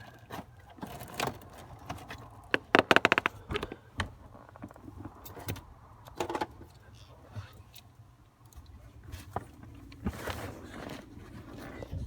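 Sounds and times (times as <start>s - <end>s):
rattling clicks: 2.6s - 3.4s
clicks and knocks: 2.6s - 3.7s.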